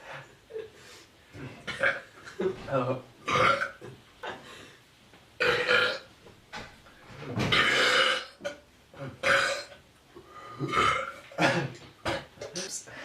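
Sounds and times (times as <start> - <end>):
loud human burps: 1.6 - 2.4, 3.2 - 4.4, 5.4 - 6.1, 7.5 - 9.8, 10.5 - 12.5.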